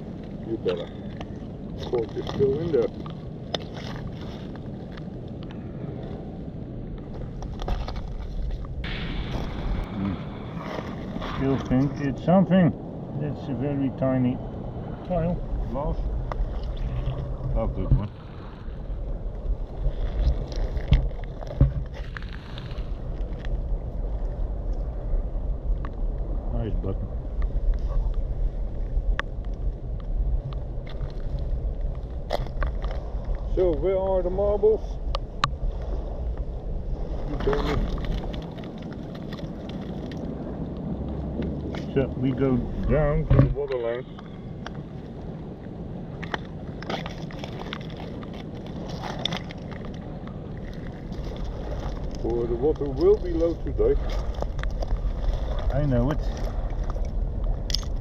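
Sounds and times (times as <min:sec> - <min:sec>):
wind rumbling on microphone: 0:00.0 - 0:58.0
knocks and scrapes: 0:19.8 - 0:23.0.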